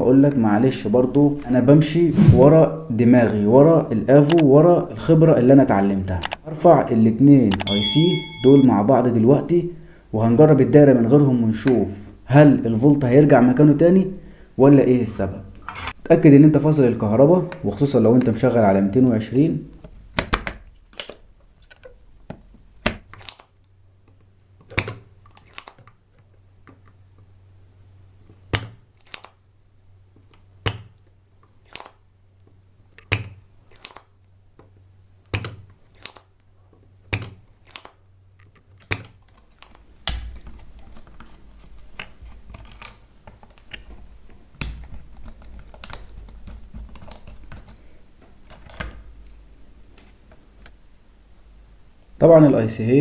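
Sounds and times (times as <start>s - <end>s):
low steady hum: 0.0s - 53.0s
low rumble: 2.0s - 2.8s
hand tools clicking: 24.8s - 25.9s, 28.5s - 29.4s, 31.6s - 32.0s, 33.0s - 34.2s, 35.3s - 36.4s, 37.1s - 40.7s.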